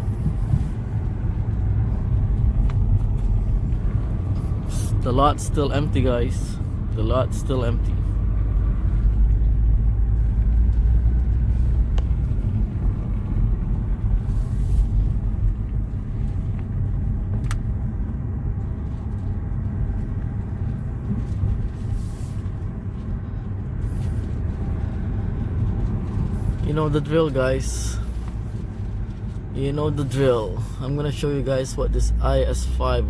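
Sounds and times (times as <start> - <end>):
car engine low rumble: 0.0 - 33.0.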